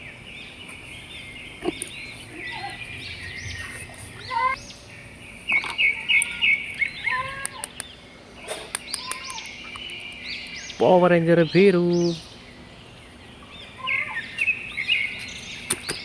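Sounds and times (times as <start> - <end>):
small birds chirping: 0.0 - 16.0
sharp clicks: 7.4 - 7.9, 8.7 - 10.6.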